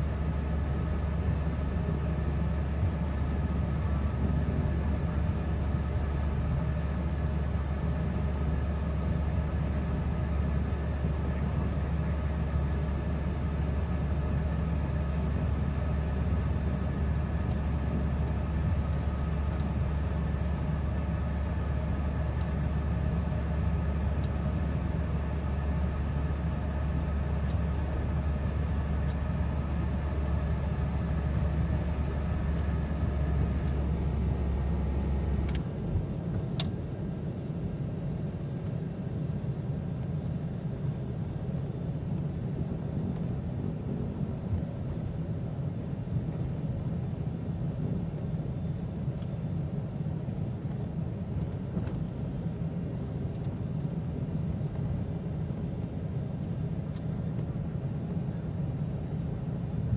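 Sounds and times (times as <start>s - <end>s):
light rumble: 0.0s - 59.9s
turboprop engine drone: 0.0s - 59.9s.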